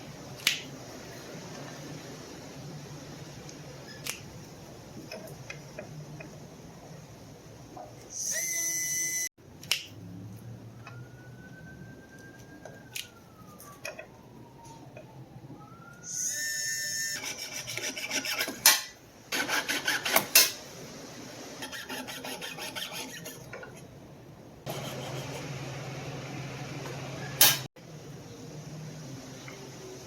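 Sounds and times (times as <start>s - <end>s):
file rasping on metal: 17.2s - 20.3s, 21.6s - 23.5s.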